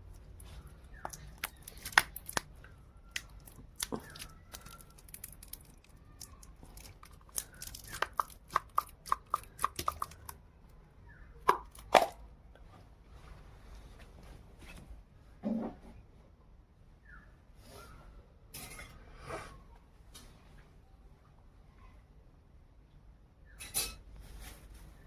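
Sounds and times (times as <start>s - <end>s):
peanut shells cracking: 0.9s - 10.4s, 11.4s - 12.2s.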